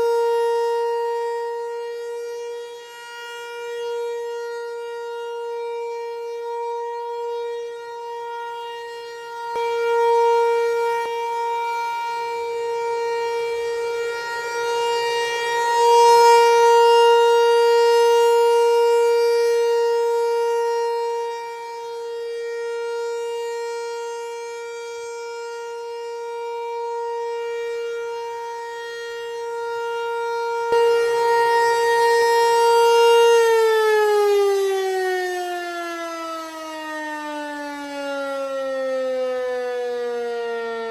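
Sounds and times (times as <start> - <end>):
tornado warning siren: 0.0 - 40.9.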